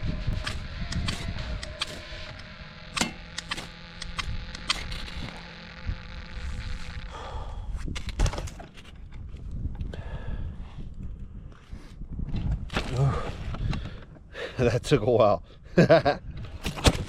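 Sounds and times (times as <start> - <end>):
ferro rod scraped with a scraper: 0.3 - 5.4.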